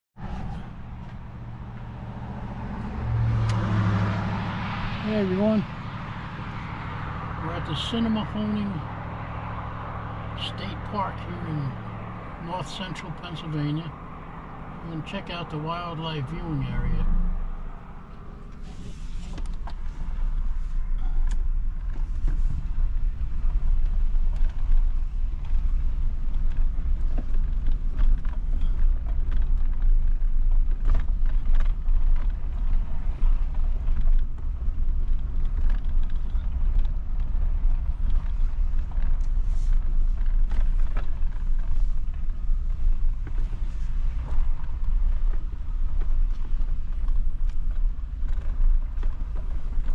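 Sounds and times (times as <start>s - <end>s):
road and engine rumble: 0.0s - 49.9s
light creaks and ticks: 19.3s - 49.9s.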